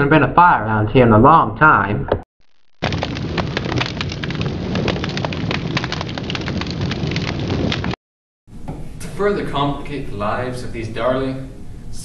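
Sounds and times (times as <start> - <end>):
fire crackling and popping: 2.4 - 8.0.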